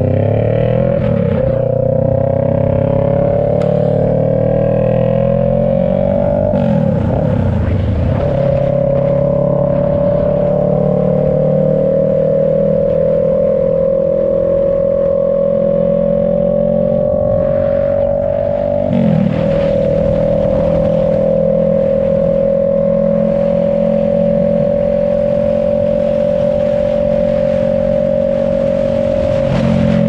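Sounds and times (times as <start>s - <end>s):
motorcycle engine running loud: 0.0s - 30.0s.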